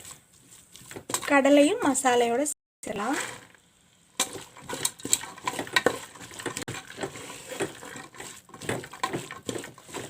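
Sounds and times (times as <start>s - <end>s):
spoon knocking and scraping pot: 4.2s - 10.0s.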